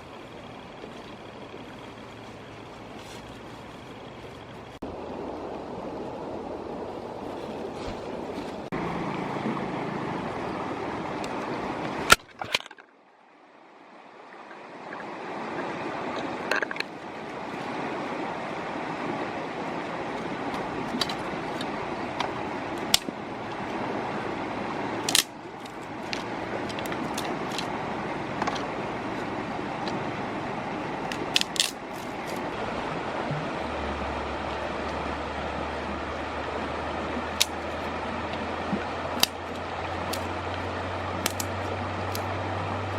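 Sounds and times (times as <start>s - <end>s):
flowing river water: 0.0s - 42.9s.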